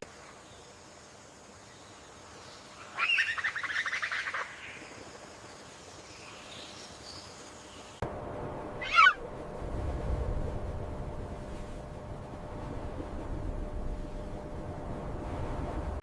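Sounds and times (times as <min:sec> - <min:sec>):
bird rattling trill: 0:08.8 - 0:09.2
birds calling: 0:08.8 - 0:09.2
loud falling bird call: 0:08.8 - 0:09.2.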